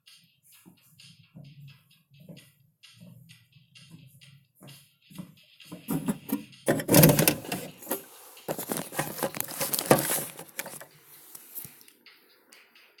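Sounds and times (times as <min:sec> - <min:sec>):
rapid clattering and rustling: 0:05.7 - 0:11.0.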